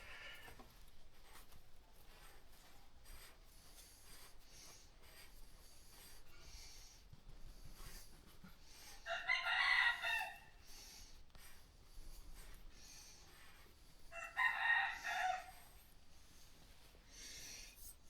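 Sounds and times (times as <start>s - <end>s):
rooster crowing: 9.1s - 10.5s, 14.1s - 15.7s.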